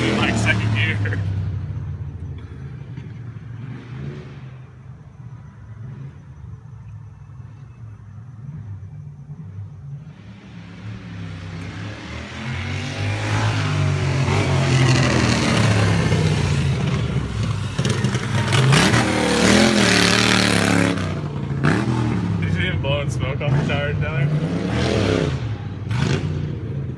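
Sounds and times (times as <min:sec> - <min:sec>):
lawnmower engine revving: 0:11.1 - 0:26.6.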